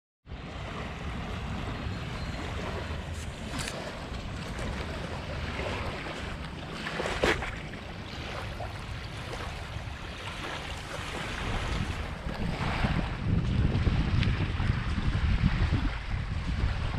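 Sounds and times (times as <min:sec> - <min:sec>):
small waves lapping: 0:00.3 - 0:16.9
wind buffeting microphone: 0:00.3 - 0:16.9
water splash: 0:03.1 - 0:13.1.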